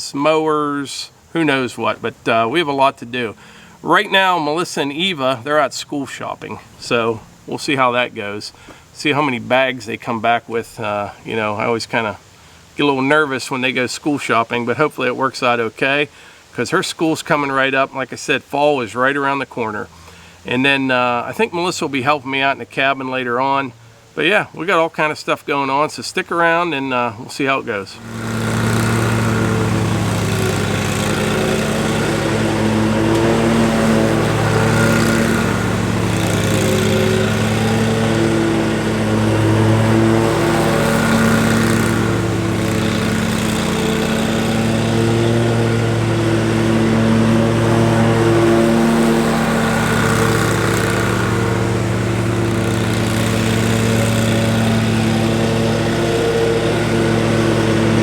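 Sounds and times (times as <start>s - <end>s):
lawn mower engine running: 0.0s - 12.8s, 19.8s - 22.2s, 27.4s - 58.0s.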